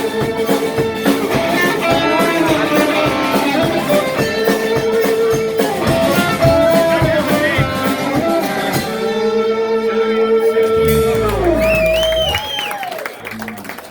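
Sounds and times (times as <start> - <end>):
drums: 0.0 - 9.5, 10.6 - 13.0
electric guitar: 10.6 - 12.9.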